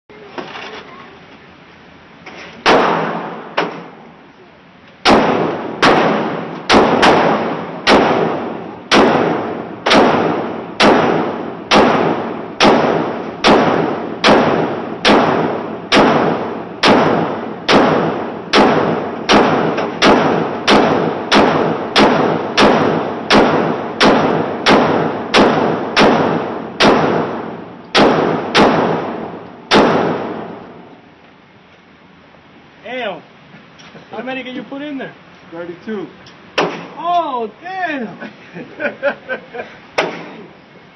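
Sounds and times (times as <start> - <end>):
pistol shots echoing: 2.6 - 3.8, 5.0 - 30.8.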